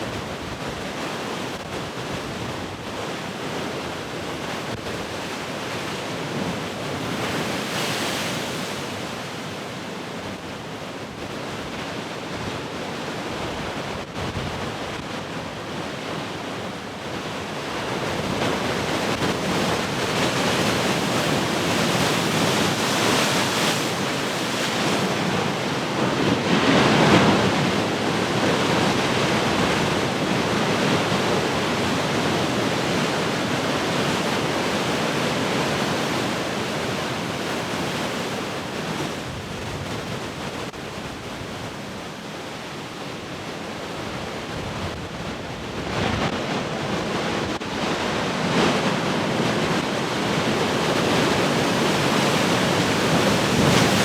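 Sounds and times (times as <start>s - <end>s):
ocean waves breaking: 17.7s - 54.0s.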